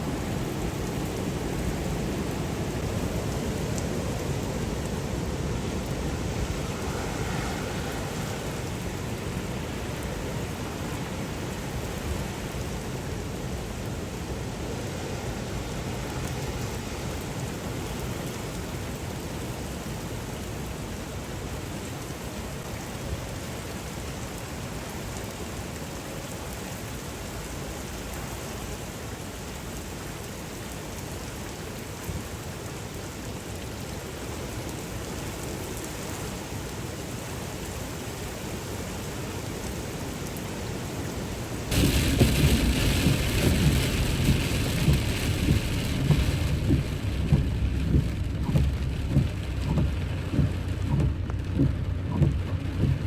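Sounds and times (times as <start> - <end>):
heavy rain pouring: 0.0 - 53.0
faint ticks: 43.0 - 53.0.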